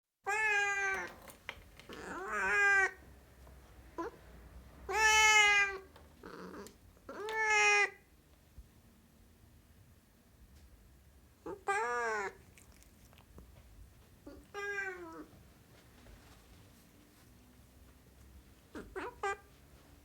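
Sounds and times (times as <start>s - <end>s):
cat meowing: 0.2s - 1.2s, 1.9s - 3.0s, 4.9s - 8.1s, 11.4s - 12.9s, 14.2s - 15.3s, 18.7s - 19.5s
cat chirp: 4.9s - 8.0s.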